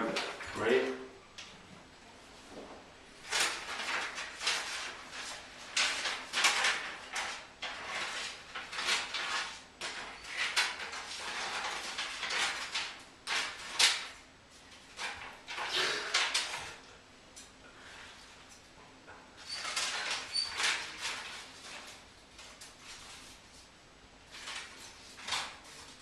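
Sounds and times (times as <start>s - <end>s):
paper rustling and tearing: 3.2s - 16.8s, 19.4s - 26.0s.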